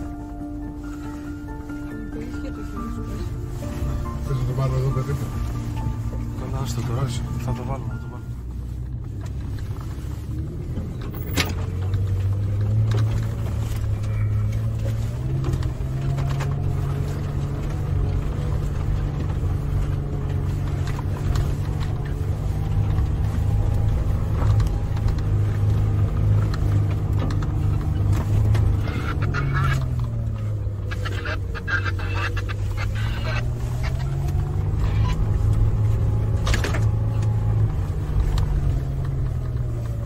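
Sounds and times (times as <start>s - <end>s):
engine running: 0.0s - 40.0s.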